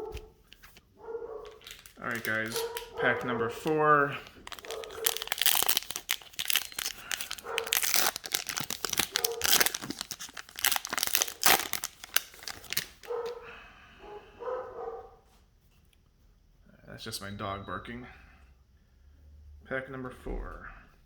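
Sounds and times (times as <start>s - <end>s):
dog barking: 1.0s - 1.7s, 2.4s - 3.8s, 4.6s - 5.3s, 7.4s - 7.9s, 9.1s - 9.7s, 13.0s - 15.2s
wrapper tearing and crinkling: 1.4s - 13.3s.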